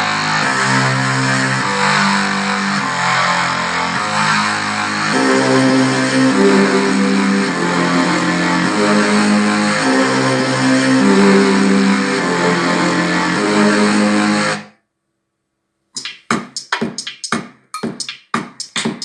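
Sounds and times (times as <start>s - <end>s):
sharp clicks: 16.0s - 19.0s.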